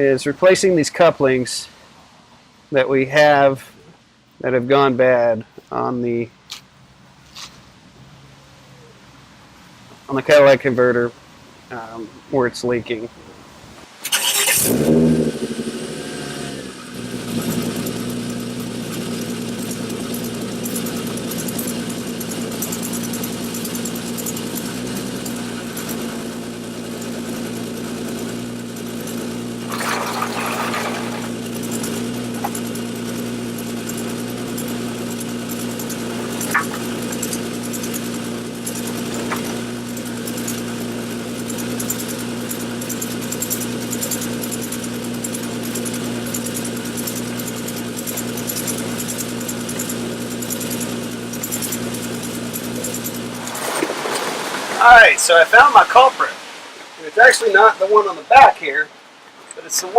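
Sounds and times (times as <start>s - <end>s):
engine idling with exhaust leak: 14.0s - 59.9s.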